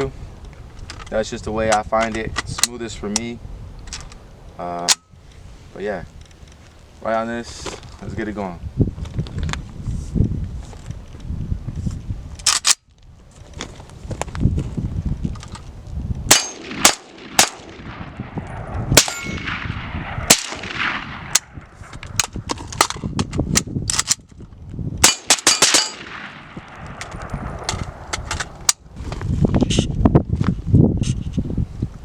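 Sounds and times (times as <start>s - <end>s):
wind rumble on microphone: 0.0s - 32.0s
rifle shots: 16.3s - 22.3s, 25.0s - 28.6s
steel plates ringing: 19.0s - 19.4s.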